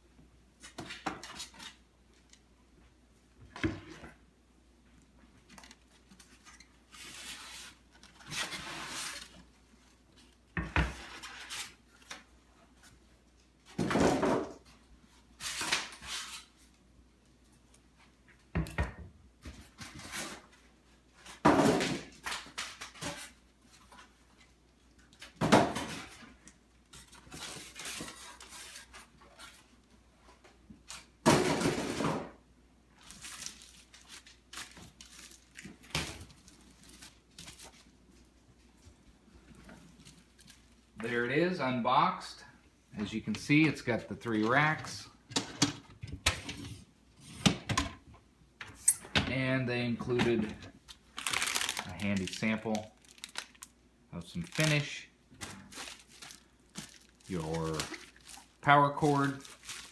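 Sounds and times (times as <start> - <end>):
packaging rustling and scraping: 5.4 - 12.1, 26.9 - 29.7, 33.0 - 37.9, 51.0 - 59.9.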